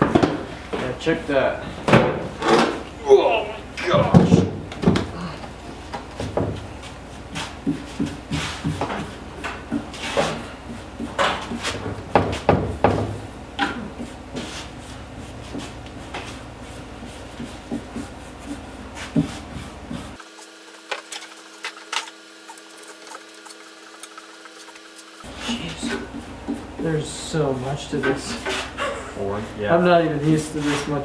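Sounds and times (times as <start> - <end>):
scraping and rubbing on antler: 14.0 - 31.0.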